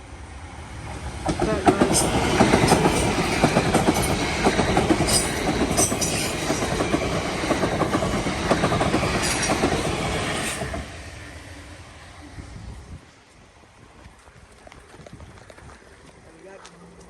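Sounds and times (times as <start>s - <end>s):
train wheels clattering over rails: 0.9s - 10.9s.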